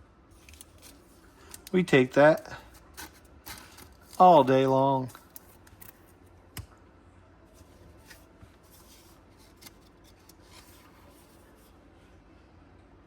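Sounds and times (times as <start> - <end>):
trading cards rustling and clicking: 0.4 - 6.1, 7.6 - 11.4.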